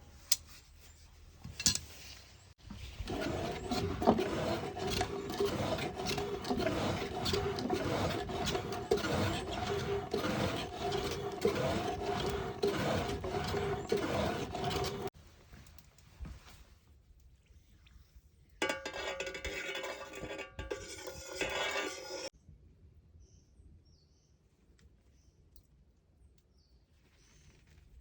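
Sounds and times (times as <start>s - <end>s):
file rasping on steel: 2.8s - 15.2s, 18.6s - 22.3s
metal squealing tone: 3.0s - 15.1s.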